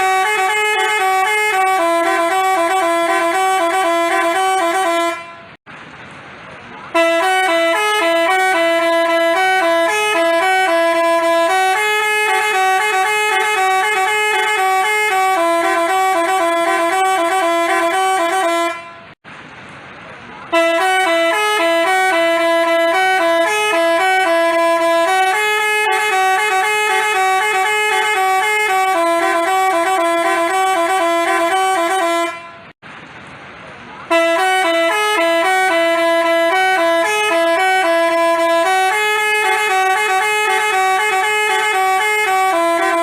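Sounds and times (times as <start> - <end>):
multi-tone bus horn melody: 0.0 - 5.6, 6.9 - 19.2, 20.5 - 32.8, 34.0 - 43.0.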